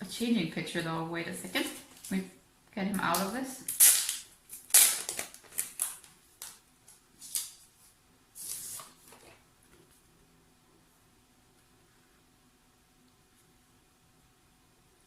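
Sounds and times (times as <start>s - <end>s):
packaging rustling and crackling: 3.6s - 7.6s.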